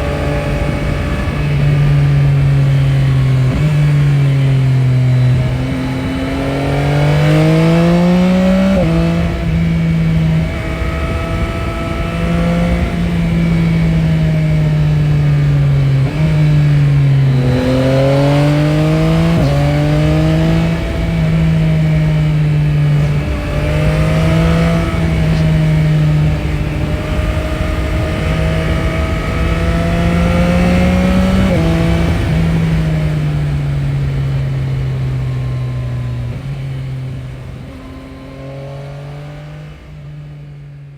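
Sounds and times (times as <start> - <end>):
motorcycle engine accelerating: 0.0 - 40.9.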